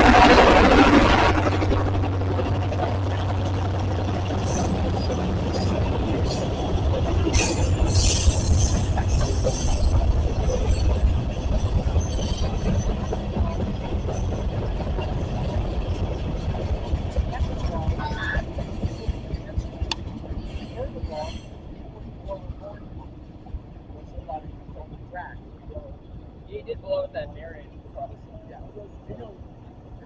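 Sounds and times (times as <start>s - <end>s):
train wheels rumbling on rail: 0.0s - 30.0s
metallic squeals and clanks: 7.3s - 13.2s.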